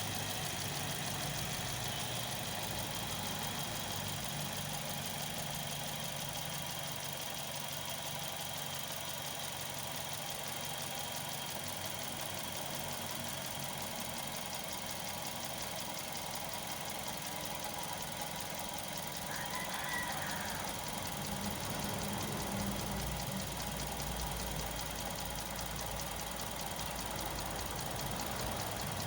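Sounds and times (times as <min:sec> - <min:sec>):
car engine idling: 0:00.0 - 0:29.0.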